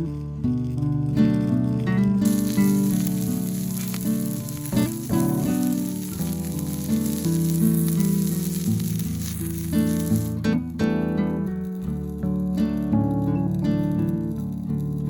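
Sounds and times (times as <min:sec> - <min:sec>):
food sizzling in a pan: 0:02.2 - 0:10.5.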